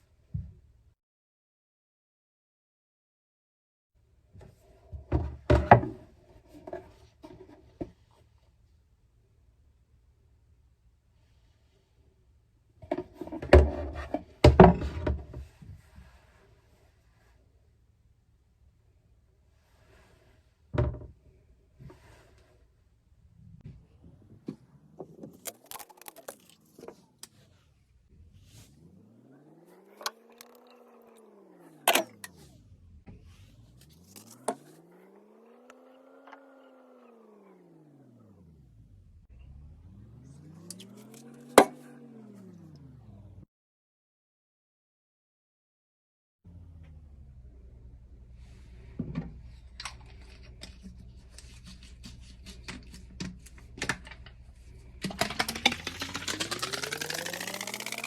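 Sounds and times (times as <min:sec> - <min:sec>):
liquid pouring into plastic bottle: 0:25.3 - 0:26.7, 0:55.0 - 0:58.0
small electric motor humming: 0:55.2 - 0:58.0.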